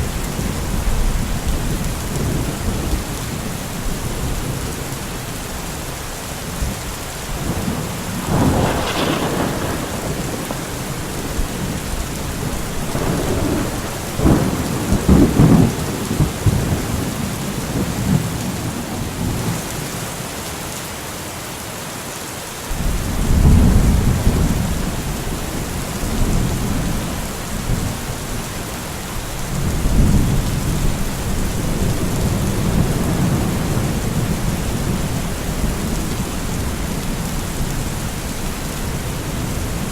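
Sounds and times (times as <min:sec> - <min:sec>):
heavy rain: 0:00.0 - 0:39.9
thunder cracks and rumbles: 0:07.3 - 0:19.6, 0:22.7 - 0:39.9.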